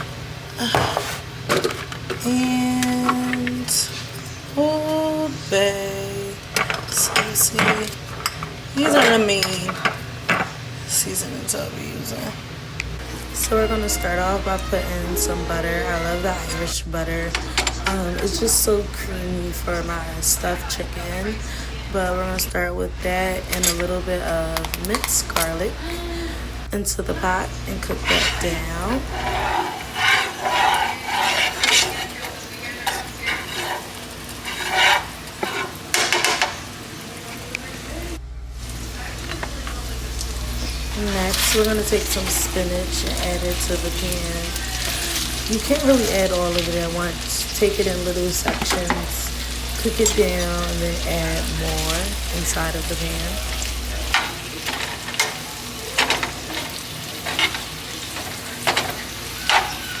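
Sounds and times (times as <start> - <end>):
butter and garlic sizzling: 1.2 - 60.0
utensil scraping a pot: 27.7 - 36.5, 40.6 - 50.7, 51.4 - 60.0.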